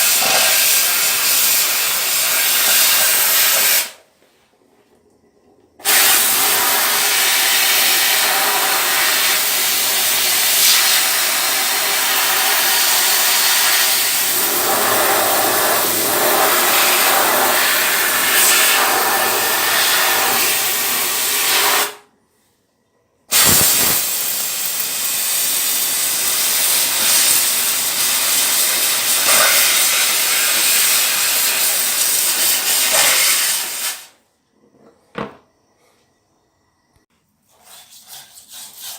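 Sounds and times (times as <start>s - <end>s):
loud steady hiss: 0.0s - 4.0s, 5.8s - 22.0s, 23.3s - 34.2s.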